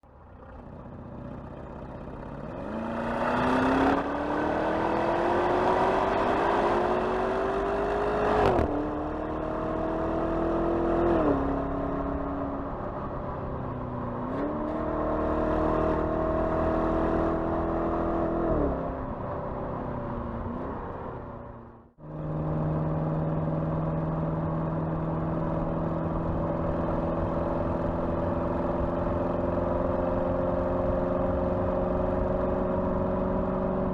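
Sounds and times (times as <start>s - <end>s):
car engine accelerating hard: 0.4s - 13.2s, 14.0s - 19.2s.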